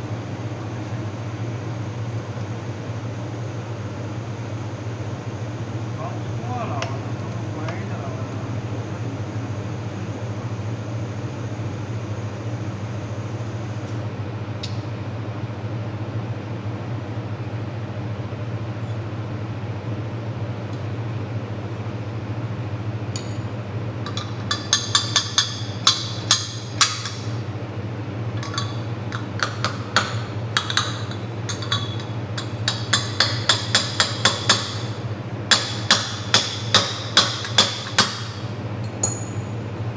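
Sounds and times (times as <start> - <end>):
laser welding machine hum: 0.0 - 39.9.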